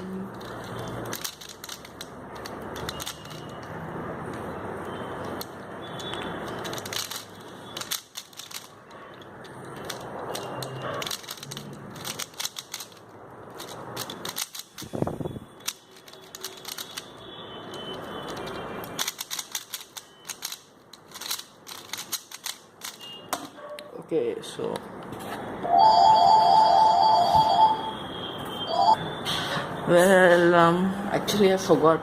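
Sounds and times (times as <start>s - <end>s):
puzzle cube plastic clicks: 0.2s - 4.5s, 5.2s - 15.0s, 15.6s - 17.1s, 17.7s - 23.2s.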